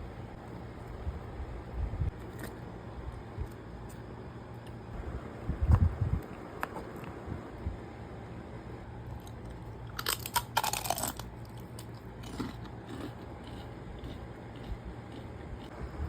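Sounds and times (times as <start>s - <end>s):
crunchy chewing of food: 2.1s - 4.8s, 5.6s - 7.4s, 9.1s - 16.0s.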